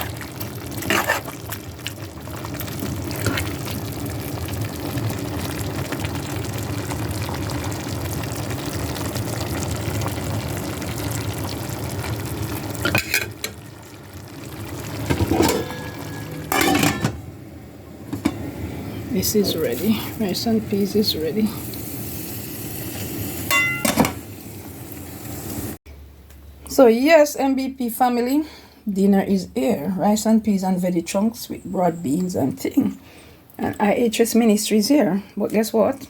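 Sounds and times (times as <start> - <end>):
food sizzling in a pot: 0.0 - 17.0, 19.0 - 25.8
spoon clattering against pot: 15.1 - 17.2, 23.5 - 24.2.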